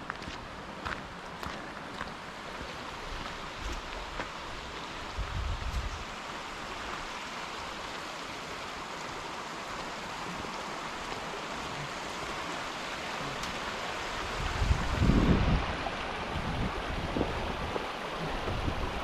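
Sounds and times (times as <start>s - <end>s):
forest stream rushing: 0.0s - 19.0s
wind buffeting microphone: 5.1s - 6.1s, 14.0s - 19.0s.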